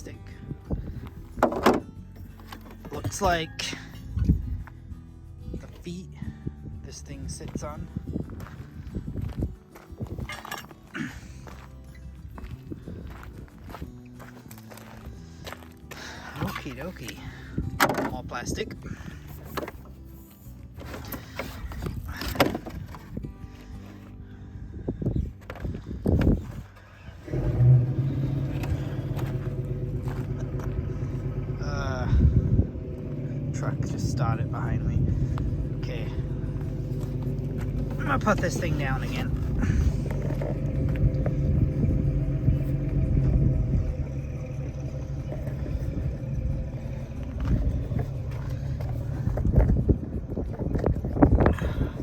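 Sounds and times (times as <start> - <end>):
truck engine starting and idling: 0.0 - 52.0
handling knocks and rustles: 1.1 - 3.2, 19.3 - 24.1.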